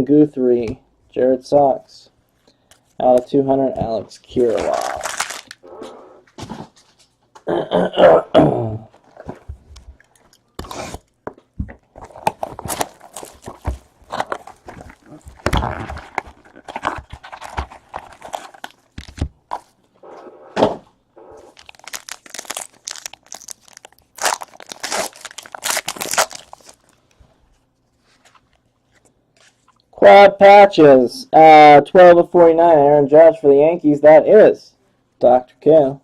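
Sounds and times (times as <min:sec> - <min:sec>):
cards being shuffled: 0:04.3 - 0:05.7, 0:12.0 - 0:19.7
wrappers tearing and crinkling: 0:04.4 - 0:05.7, 0:12.0 - 0:19.8, 0:21.4 - 0:27.0.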